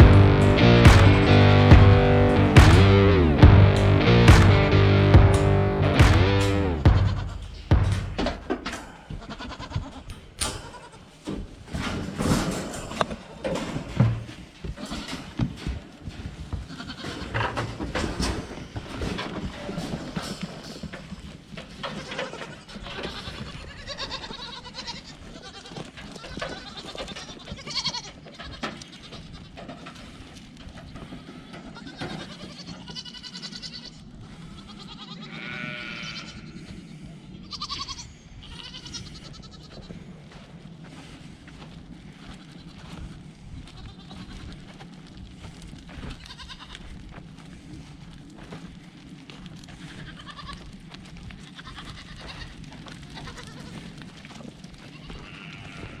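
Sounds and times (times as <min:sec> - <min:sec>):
goats bleating: 0:00.0 - 0:11.2, 0:16.6 - 0:17.4, 0:21.8 - 0:29.7, 0:30.8 - 0:36.8, 0:37.4 - 0:40.1, 0:43.6 - 0:44.7, 0:45.9 - 0:47.0, 0:49.6 - 0:50.8, 0:51.4 - 0:56.0
small knocks and rustling: 0:09.9 - 0:23.4.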